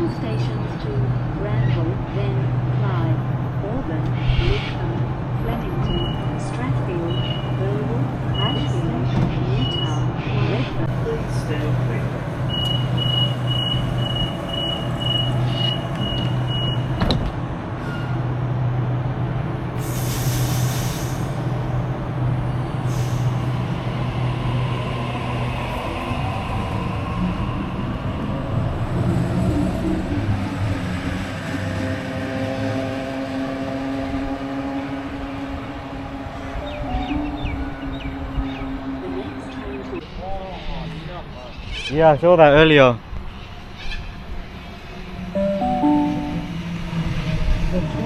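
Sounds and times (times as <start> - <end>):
electric train rumbling: 0.0 - 40.2, 43.1 - 48.0
electric train humming: 32.5 - 40.0, 44.5 - 48.0
high-pitched beeping: 45.4 - 46.6.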